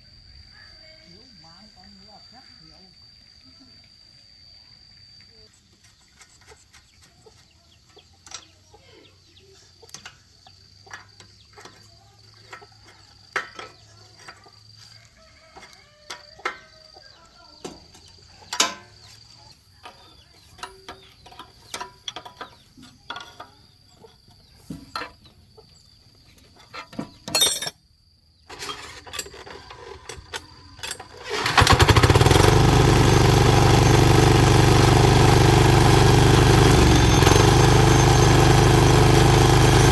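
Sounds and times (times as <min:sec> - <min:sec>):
hand tools clinking on metal: 0:18.5 - 0:19.2, 0:26.7 - 0:27.8
diesel engine running: 0:31.3 - 0:39.9.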